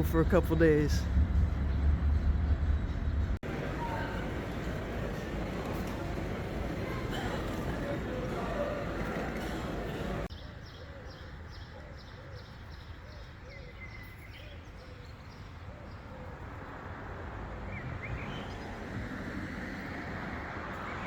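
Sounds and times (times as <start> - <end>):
distant traffic hum: 0.0 - 10.4, 15.0 - 21.0
birds calling: 3.4 - 16.4.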